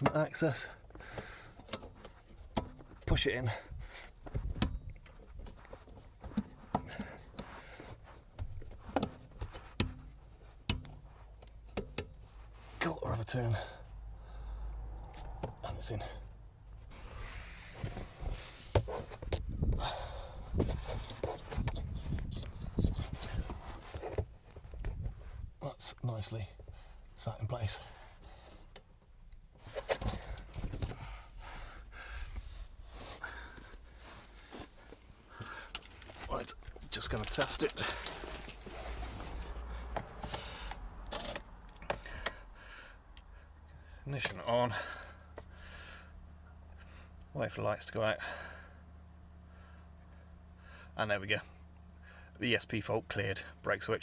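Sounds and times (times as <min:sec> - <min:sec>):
man breathing hard and sighing: 0:00.8 - 0:01.7, 0:13.6 - 0:15.0, 0:19.6 - 0:20.6, 0:30.0 - 0:35.9, 0:41.8 - 0:46.3, 0:48.2 - 0:51.0
handling rustle: 0:32.4 - 0:40.3.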